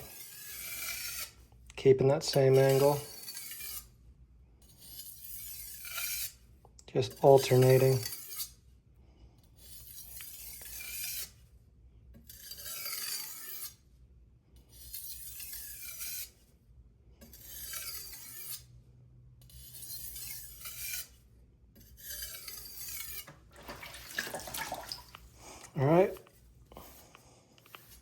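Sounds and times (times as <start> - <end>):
knife scraping on whetstone: 0.0 - 1.4, 2.3 - 3.9, 4.6 - 6.4, 7.0 - 8.6, 9.6 - 11.4, 12.2 - 13.9, 14.6 - 16.5, 17.2 - 18.7, 19.4 - 28.0.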